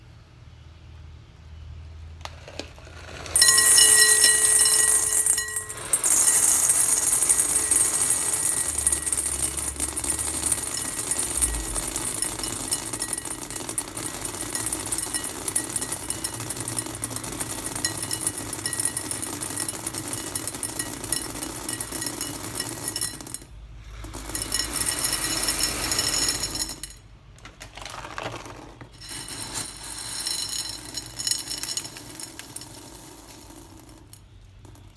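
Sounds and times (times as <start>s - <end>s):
chickpeas poured into bowl: 2.3s - 34.9s.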